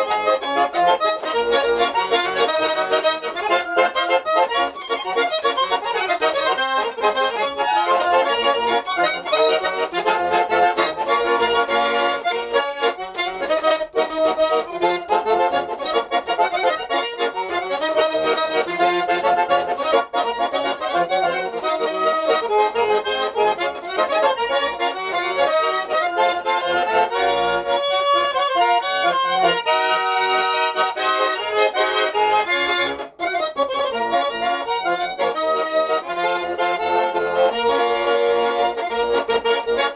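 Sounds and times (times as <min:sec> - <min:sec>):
button accordion folk melody: 0:00.0 - 0:39.9.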